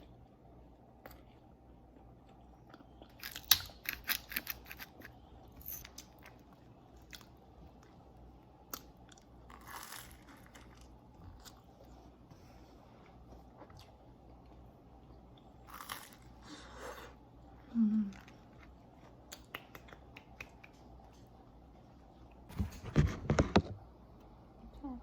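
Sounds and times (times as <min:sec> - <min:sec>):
chewing crunchy food: 0:01.0 - 0:12.2.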